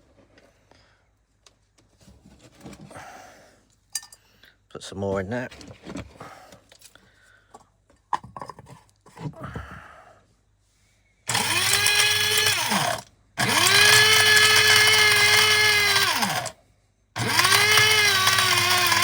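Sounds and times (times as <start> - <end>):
coffee grinder motor whine: 11.3 - 16.6, 17.2 - 19.0.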